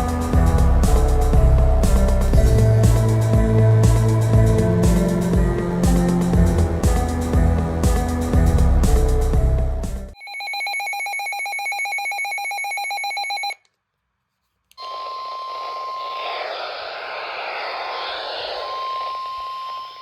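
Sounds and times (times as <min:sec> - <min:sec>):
steady high alarm tone: 0:10.2 - 0:13.6, 0:14.8 - 0:20.0
pulsing electronic buzzer alarm: 0:14.8 - 0:16.8, 0:18.0 - 0:20.0
radio static: 0:14.8 - 0:20.0.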